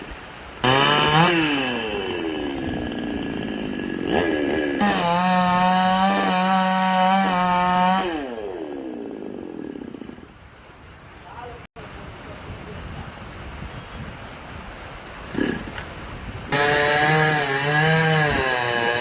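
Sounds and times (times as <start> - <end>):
chainsaw engine revving: 0.6 - 10.3, 15.3 - 15.9, 16.5 - 19.0.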